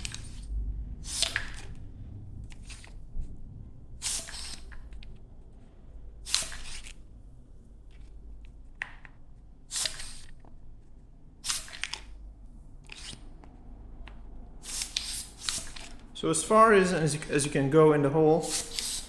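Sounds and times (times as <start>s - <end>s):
hissing puffs of air from syringe: 1.0s - 1.7s, 4.0s - 5.0s, 6.2s - 6.9s, 9.7s - 10.3s, 11.4s - 12.0s, 14.6s - 16.0s, 18.4s - 19.0s.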